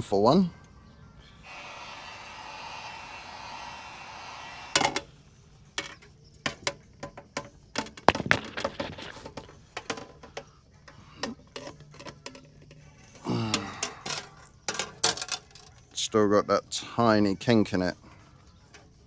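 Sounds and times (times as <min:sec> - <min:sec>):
heat gun blowing hiss: 0:01.4 - 0:05.4.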